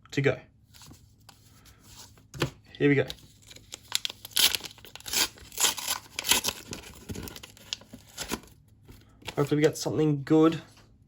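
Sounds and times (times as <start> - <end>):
wrapper being torn and crinkled: 3.4 - 8.5.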